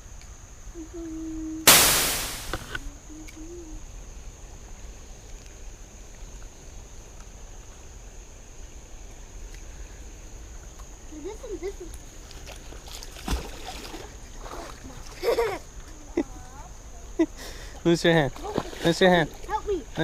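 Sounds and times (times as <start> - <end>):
loud water splash: 1.7 - 2.8.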